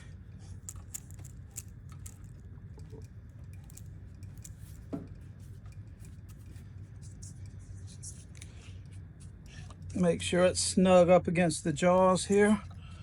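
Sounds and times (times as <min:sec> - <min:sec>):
low steady hum: 0:00.0 - 0:13.0
wooden bowl clicking and scraping: 0:00.5 - 0:07.6.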